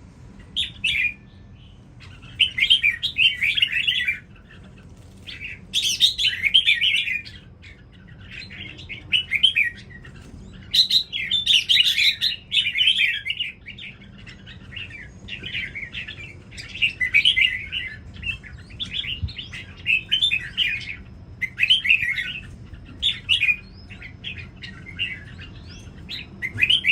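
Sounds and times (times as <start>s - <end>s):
bulbul singing chattering song: 0.2s - 26.9s.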